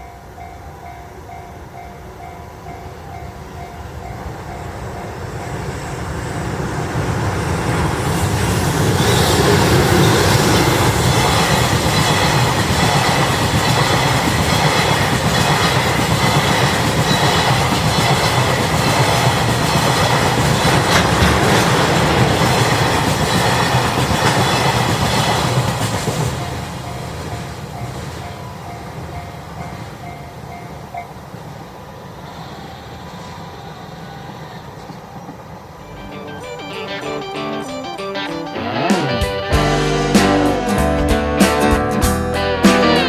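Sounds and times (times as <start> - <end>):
freight train passing: 0.0 - 43.0
wheels clattering over rail joints: 7.1 - 30.8.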